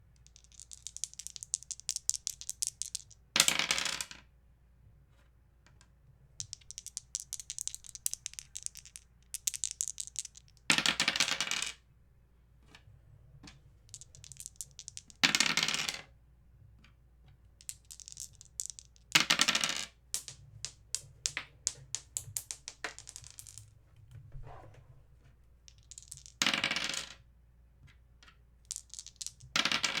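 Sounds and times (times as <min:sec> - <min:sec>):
dice clattering: 0:00.2 - 0:04.2, 0:06.4 - 0:11.8, 0:13.8 - 0:16.1, 0:17.6 - 0:23.7, 0:25.7 - 0:27.2, 0:28.2 - 0:30.0
dice rattling lightly: 0:00.2 - 0:04.2, 0:06.4 - 0:11.8, 0:13.4 - 0:16.1, 0:17.6 - 0:23.8, 0:25.6 - 0:27.2, 0:28.2 - 0:30.0.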